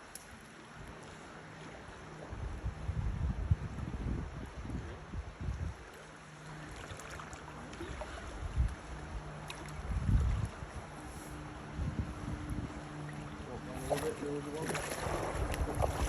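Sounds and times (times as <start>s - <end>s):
wind buffeting microphone: 2.3s - 5.9s, 7.8s - 16.0s
river water rushing: 6.0s - 16.0s.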